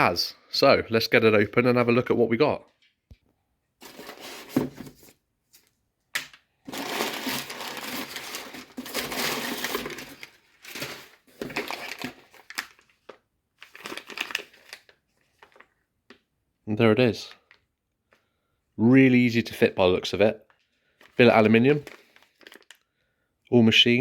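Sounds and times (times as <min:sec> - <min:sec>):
packaging rustling and tearing: 0:03.8 - 0:05.2, 0:06.6 - 0:15.8, 0:21.0 - 0:22.9.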